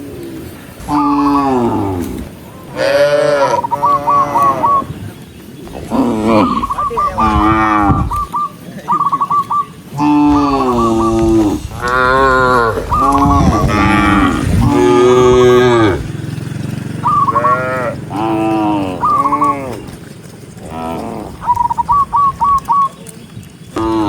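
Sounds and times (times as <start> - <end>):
cattle mooing: 0.8 - 4.9, 5.7 - 8.3, 9.8 - 16.4, 17.0 - 20.0, 20.6 - 21.6, 23.8 - 24.0.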